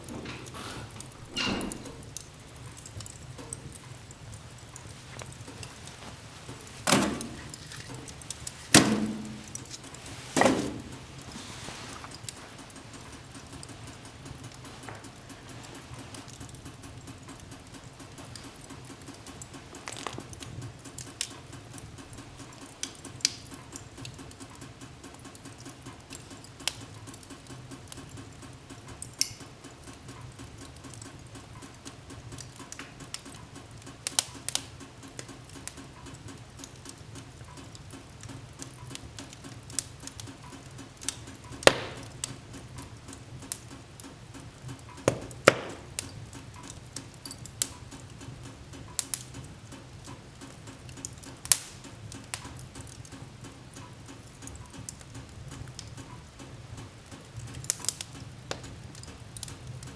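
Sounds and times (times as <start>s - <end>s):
wood fire crackling: 0.0s - 59.9s.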